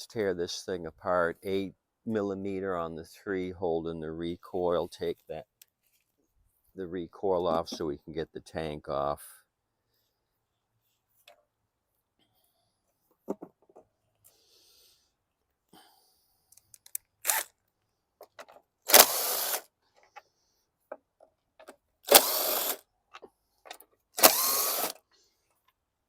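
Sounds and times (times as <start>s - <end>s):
power tool whine: 18.9s - 19.6s, 22.1s - 22.8s, 24.2s - 25.0s.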